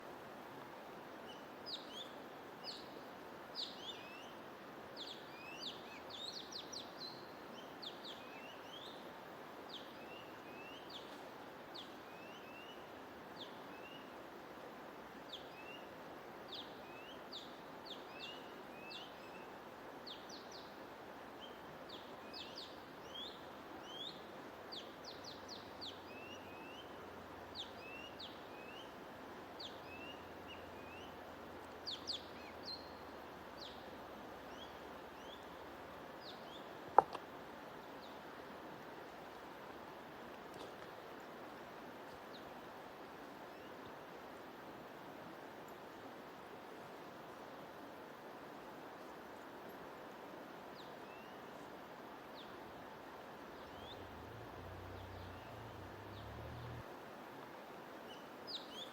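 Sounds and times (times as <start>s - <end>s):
steady white noise hiss: 0.0s - 58.9s.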